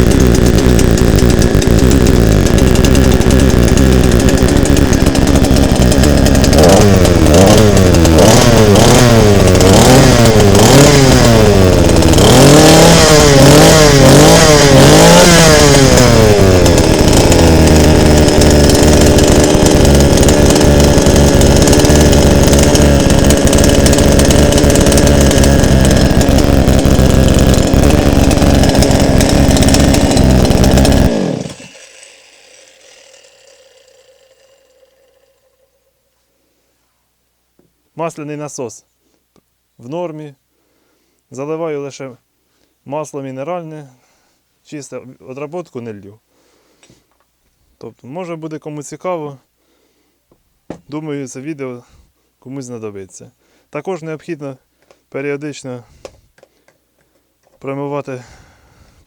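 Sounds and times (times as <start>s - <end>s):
chainsaw engine revving: 0.0s - 36.0s, 58.1s - 59.0s.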